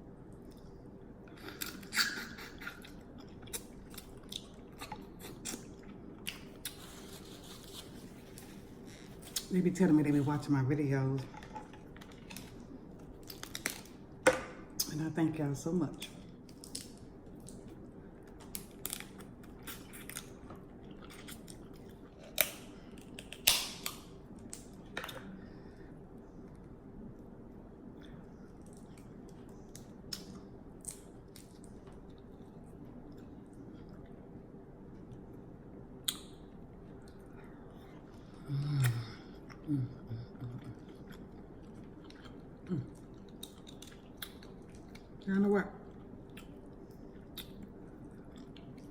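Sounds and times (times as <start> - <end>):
person chewing food: 0.4 - 9.5, 16.0 - 25.6, 36.0 - 45.2, 45.8 - 48.9
chewing and lip smacking: 36.0 - 45.2, 45.8 - 48.9.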